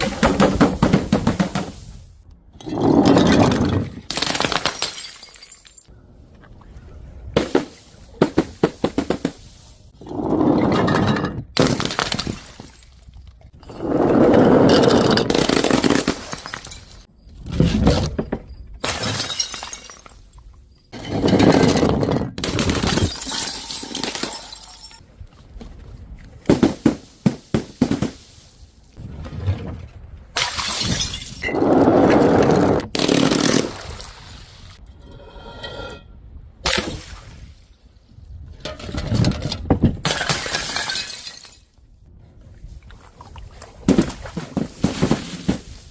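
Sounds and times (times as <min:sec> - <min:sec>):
glass bottles shattering: 0:02.6 - 0:05.9, 0:14.7 - 0:17.1, 0:18.0 - 0:25.0, 0:30.4 - 0:31.6, 0:40.0 - 0:41.8
tinkle of falling glass shards: 0:05.0 - 0:05.9.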